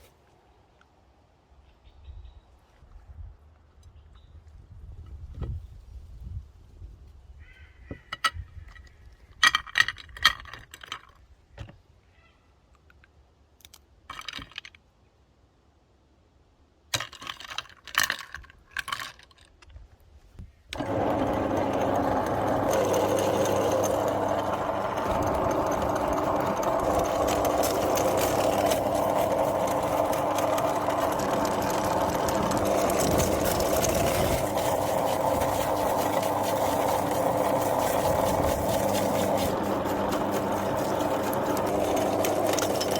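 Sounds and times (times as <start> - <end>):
electric meat grinder motor hum: 20.8 - 42.9.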